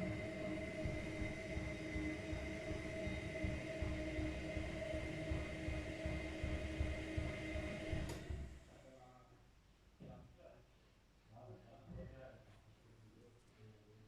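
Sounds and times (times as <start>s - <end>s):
washing machine running: 0.0s - 8.7s.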